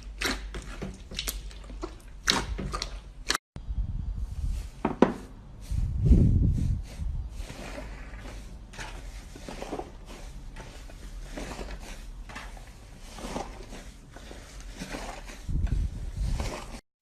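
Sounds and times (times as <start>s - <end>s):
slime squishing and crackling: 0.0s - 3.4s, 7.3s - 16.8s.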